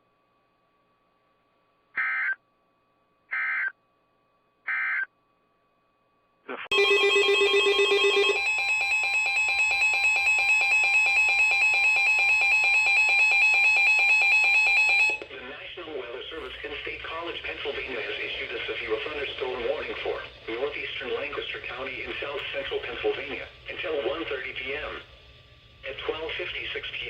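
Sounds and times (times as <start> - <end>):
steady multi-pitch attention tone: 6.7 - 15.4.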